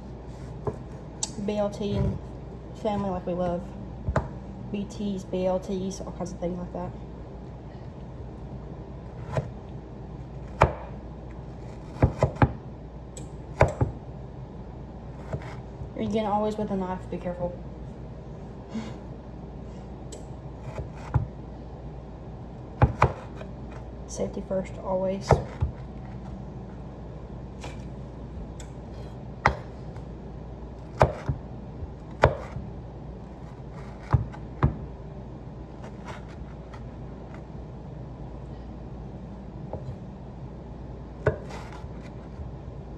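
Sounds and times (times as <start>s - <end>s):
knife cutting on board: 15.2s - 15.6s, 30.9s - 31.4s, 32.1s - 32.6s, 33.3s - 34.4s, 35.8s - 37.4s, 41.3s - 42.4s
kitchen knife cutting tomatoes: 30.9s - 31.3s, 32.1s - 32.6s, 35.8s - 37.4s.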